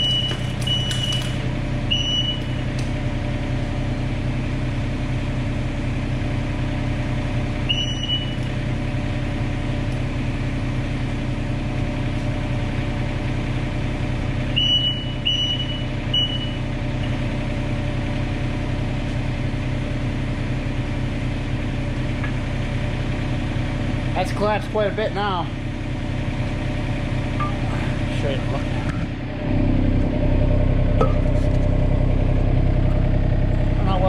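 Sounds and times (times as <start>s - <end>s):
mini excavator diesel engine: 0.0s - 34.0s.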